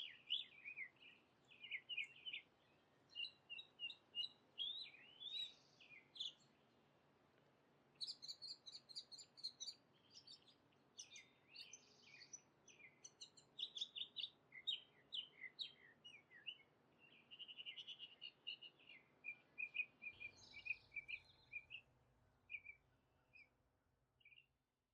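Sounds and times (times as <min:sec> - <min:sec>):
birds chirping and whistling: 0:08.0 - 0:21.8.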